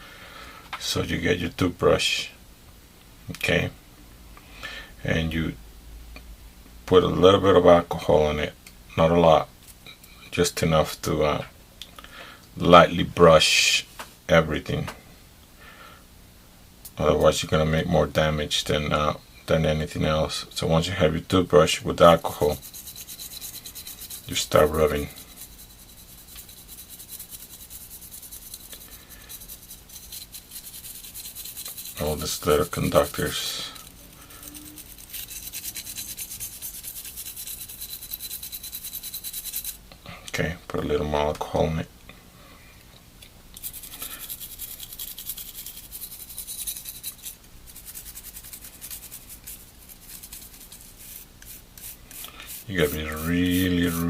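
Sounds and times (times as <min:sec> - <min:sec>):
toothbrush scrubbing circuit board: 0:22.1 - 0:39.8, 0:43.6 - 0:54.0.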